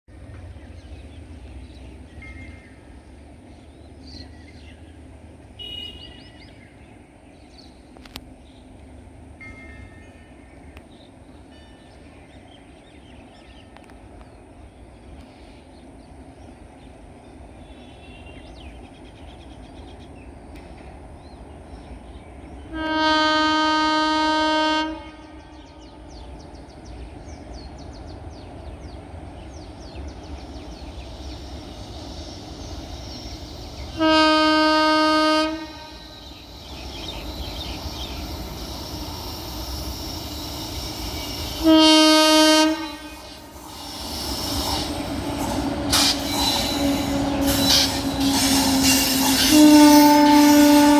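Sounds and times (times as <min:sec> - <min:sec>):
train rumbling: 0:00.1 - 0:50.9
locomotive horn blasts: 0:05.6 - 0:06.3, 0:22.7 - 0:26.2, 0:33.8 - 0:36.8, 0:40.9 - 0:43.5, 0:46.0 - 0:50.9.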